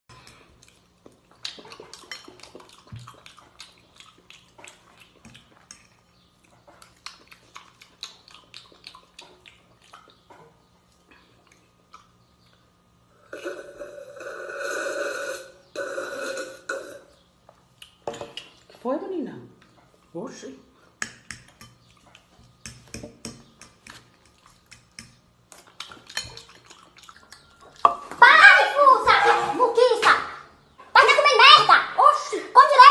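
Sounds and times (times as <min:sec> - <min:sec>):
chewing smacks: 0:00.1 - 0:12.8, 0:17.4 - 0:18.8, 0:21.4 - 0:23.0, 0:23.7 - 0:28.1.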